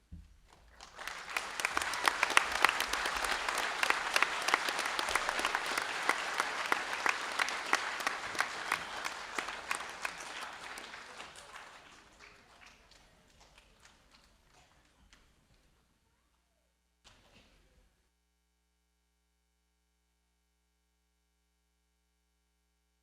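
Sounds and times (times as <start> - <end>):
audience applauding: 0.6 - 15.0.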